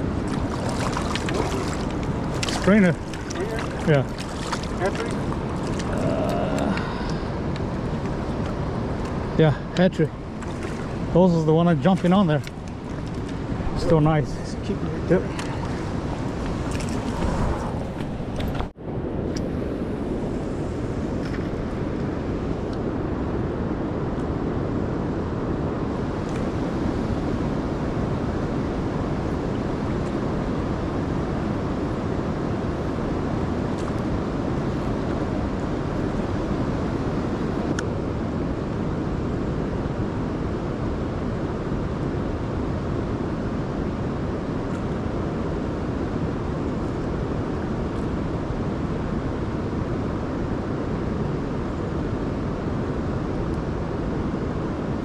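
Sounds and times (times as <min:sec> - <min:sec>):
river water rushing: 0:00.0 - 0:18.8.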